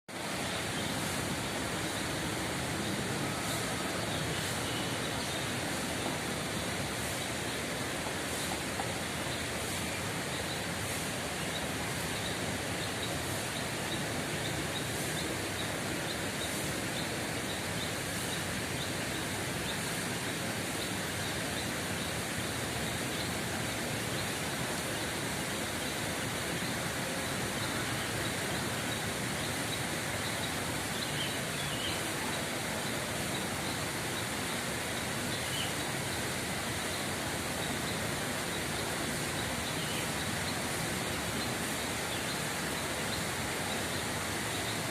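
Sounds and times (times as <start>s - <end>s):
flowing water: 0.1s - 44.9s.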